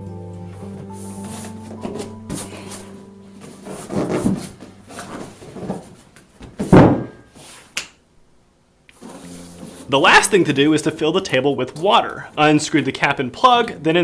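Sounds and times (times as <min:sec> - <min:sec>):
cushion thumping: 0:00.6 - 0:07.4
cushion rustling: 0:00.6 - 0:07.8.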